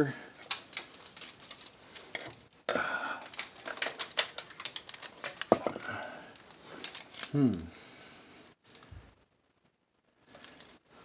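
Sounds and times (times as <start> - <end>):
metal clicks and scrapes: 0.3 - 2.6.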